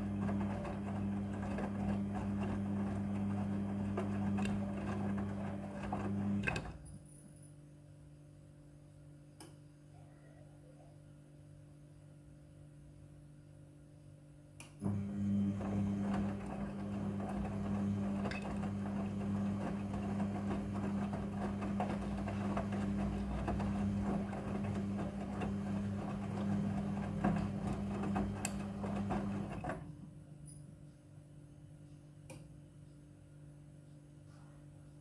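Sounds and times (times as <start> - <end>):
washing machine running: 0.0 - 6.9, 14.8 - 30.3.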